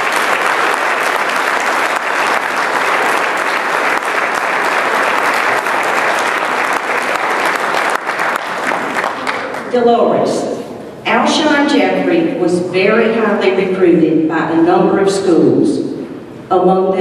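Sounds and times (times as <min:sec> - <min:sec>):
audience applauding: 0:00.0 - 0:09.8.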